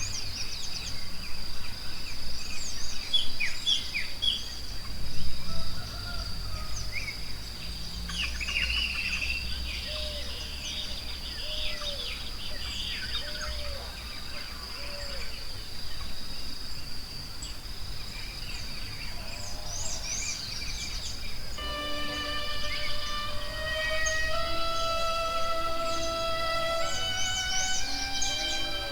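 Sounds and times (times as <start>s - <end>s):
high insect drone: 21.6s - 28.9s
soft instrumental music: 21.6s - 28.9s.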